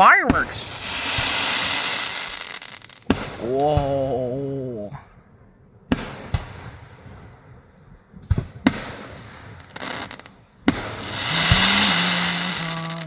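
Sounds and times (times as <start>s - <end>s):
fireworks bangs: 0.0s - 4.2s, 5.9s - 13.0s
fireworks crackling hiss: 0.4s - 3.6s, 8.7s - 13.0s.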